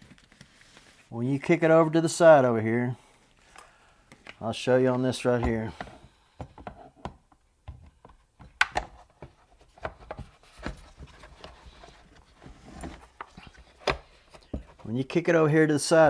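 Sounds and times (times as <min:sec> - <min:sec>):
plastic parts clicking and knocking: 0:05.4 - 0:14.9.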